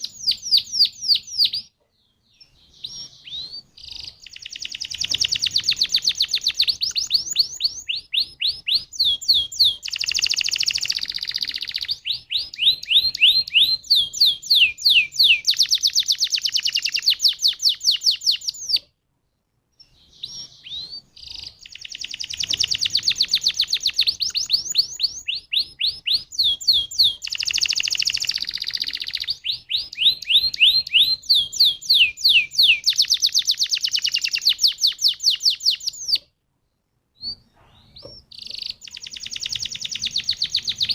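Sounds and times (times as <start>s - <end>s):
canary singing trills: 0.0s - 18.9s, 19.8s - 36.4s, 37.2s - 40.9s.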